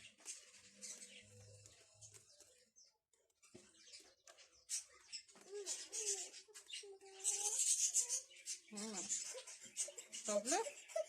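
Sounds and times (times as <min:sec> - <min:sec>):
high-pitched squeaky vocal sounds: 0:05.4 - 0:11.0.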